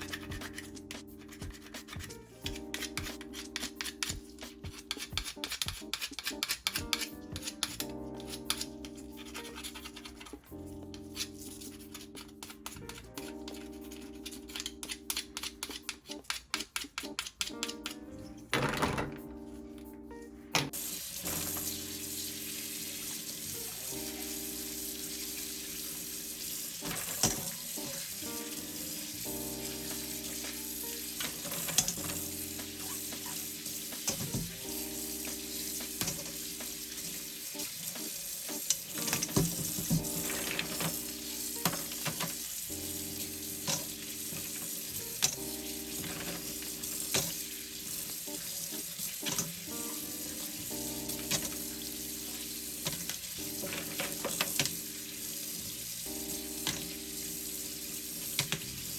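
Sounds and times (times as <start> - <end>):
soft background music: 0.0 - 58.9
food sizzling in a frying pan: 20.7 - 58.9.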